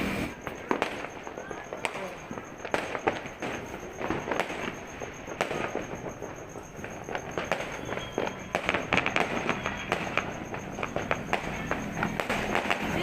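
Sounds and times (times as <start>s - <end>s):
continuous crackling din: 0.0s - 13.0s
fireworks cracking and banging: 0.0s - 13.0s.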